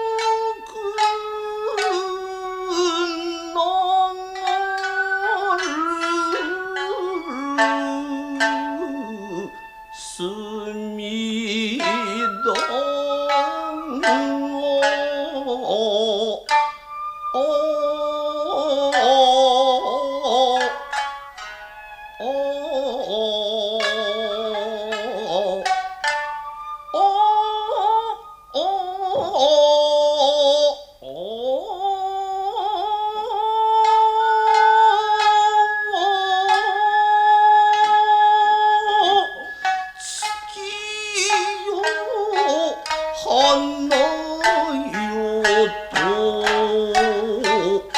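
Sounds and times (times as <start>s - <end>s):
person singing long wavering notes: 0.0s - 47.9s
shamisen plucked notes: 0.0s - 47.9s.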